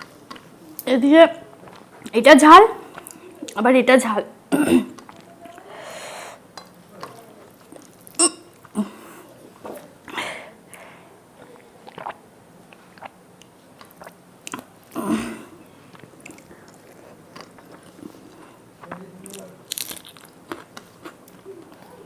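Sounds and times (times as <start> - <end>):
chewing and mouth sounds: 5.0 - 5.7, 6.6 - 8.8, 11.4 - 15.1, 15.8 - 22.0
breaths: 5.6 - 6.4, 10.1 - 11.2.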